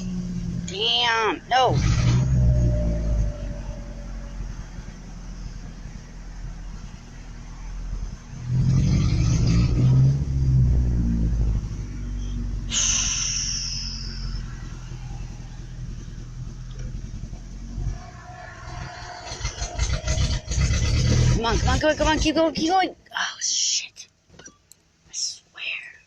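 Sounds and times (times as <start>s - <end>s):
truck engine idling and revving: 0.0s - 22.9s
high squeal falling in pitch: 1.9s - 5.5s, 12.7s - 15.3s, 17.7s - 21.2s.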